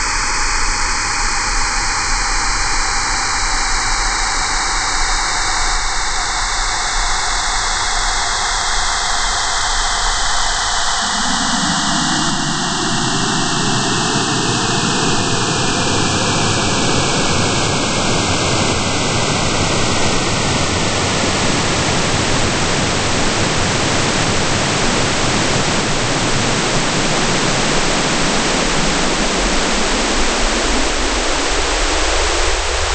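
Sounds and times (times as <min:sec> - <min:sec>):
synthesized phaser rushing noise: 0:09.3 - 0:32.9.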